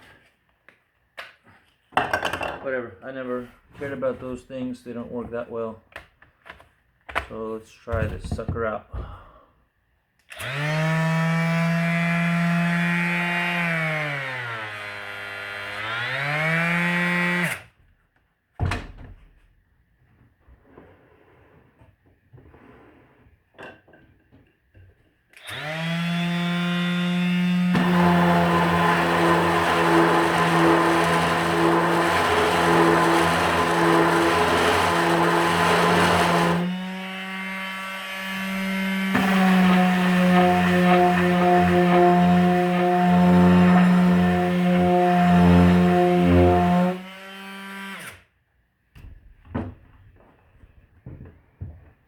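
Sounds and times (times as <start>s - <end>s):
palm sander running: 10.4s - 17.5s, 25.4s - 48.0s.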